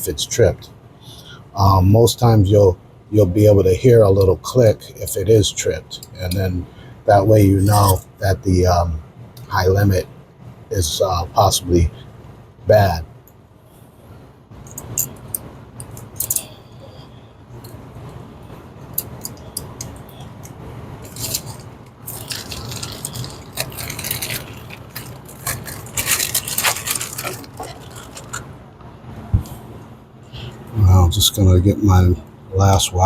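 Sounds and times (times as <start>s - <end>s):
faint low hum: 0.0s - 33.0s
wire terminals clicking and scraping: 14.6s - 16.6s, 18.8s - 28.6s.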